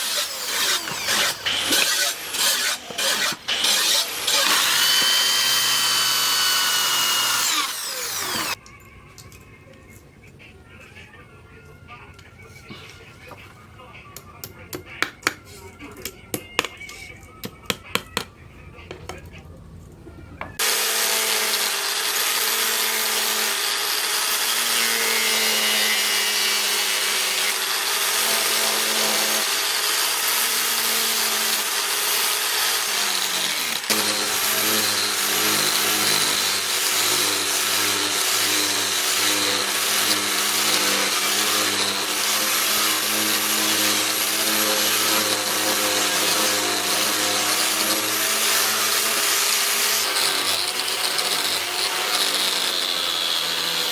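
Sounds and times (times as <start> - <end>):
electric grinder grinding steel: 0.0 - 8.6, 20.6 - 53.9.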